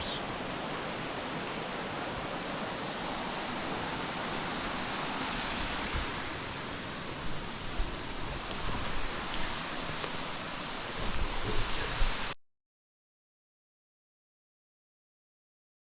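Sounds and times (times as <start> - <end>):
waterfall rushing: 0.0 - 12.4.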